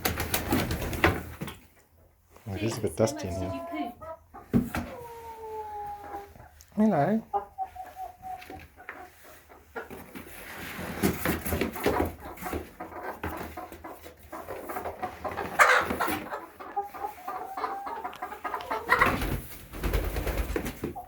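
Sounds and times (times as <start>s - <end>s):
wings flapping and scuffling: 0.0s - 1.8s, 7.8s - 21.0s
chickens clucking and squawking: 0.0s - 21.0s.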